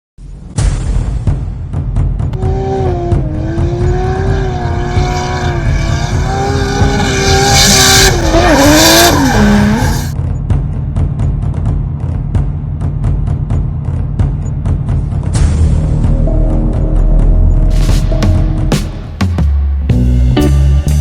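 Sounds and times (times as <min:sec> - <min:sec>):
car engine running hard: 0:01.9 - 0:19.2
low music beat: 0:02.3 - 0:10.2, 0:15.4 - 0:21.0
tyre squeal: 0:05.2 - 0:10.2.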